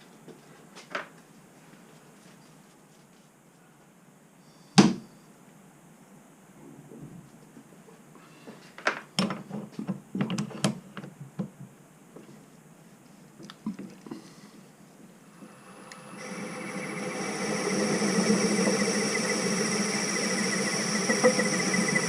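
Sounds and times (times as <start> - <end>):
lathe motor running: 15.3 - 22.0.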